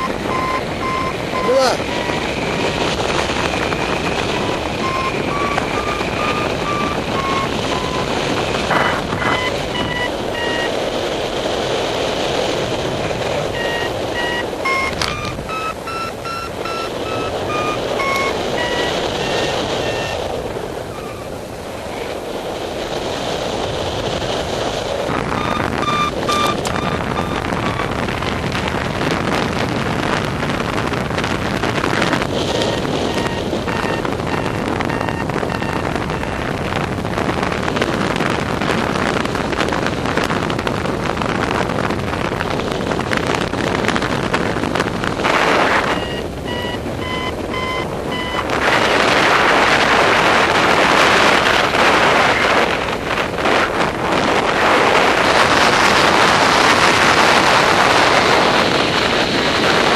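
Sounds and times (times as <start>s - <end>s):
variometer beeping: 0.0s - 2.7s, 3.5s - 10.9s, 13.1s - 21.4s, 25.1s - 29.6s, 31.6s - 36.9s, 45.3s - 49.8s
wind rushing over microphone: 0.0s - 59.9s.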